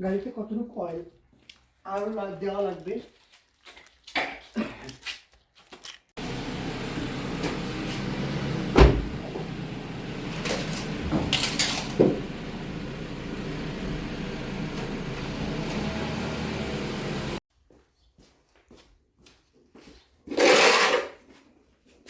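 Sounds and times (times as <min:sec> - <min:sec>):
loud thump: 0:06.2 - 0:15.9
car engine idling: 0:06.2 - 0:17.4.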